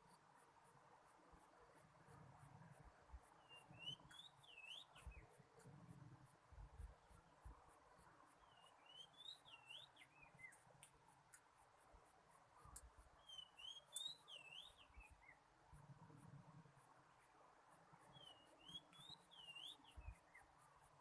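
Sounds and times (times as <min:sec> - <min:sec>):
bird singing whistled notes: 0:03.4 - 0:05.3, 0:08.4 - 0:10.6, 0:13.2 - 0:15.4, 0:18.1 - 0:20.5
light scattered clicks: 0:10.4 - 0:11.8, 0:12.6 - 0:13.1, 0:13.9 - 0:14.2.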